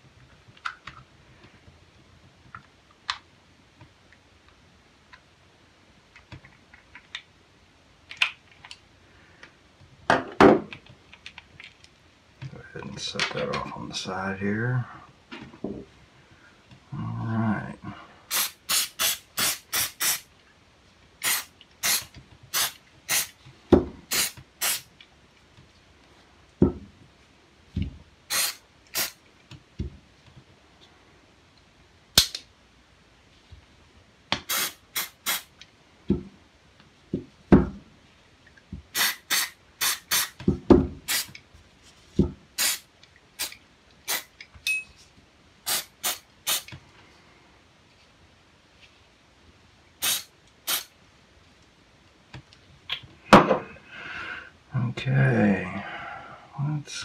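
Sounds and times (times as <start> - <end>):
aerosol spray hissing squirts: 18.3 - 20.2, 21.2 - 23.4, 24.1 - 24.9, 28.3 - 29.2, 34.5 - 35.5, 38.9 - 40.4, 41.1 - 41.4, 42.6 - 42.8, 43.4 - 44.3, 45.7 - 46.7, 50.0 - 50.9.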